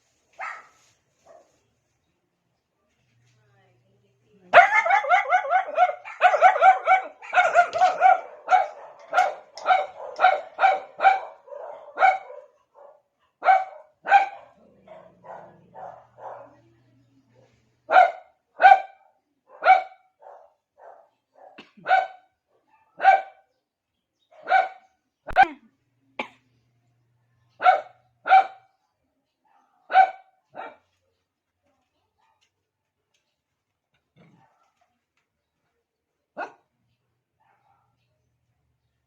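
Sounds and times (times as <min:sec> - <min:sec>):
small dog barking: 0:00.4 - 0:01.6, 0:04.5 - 0:16.6, 0:17.4 - 0:23.5, 0:24.3 - 0:25.6, 0:27.6 - 0:28.7, 0:29.5 - 0:30.9, 0:36.4 - 0:36.7, 0:37.4 - 0:38.0.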